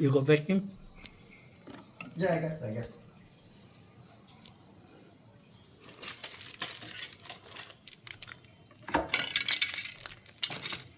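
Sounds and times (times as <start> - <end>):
handling rustling and clattering: 5.8 - 10.9.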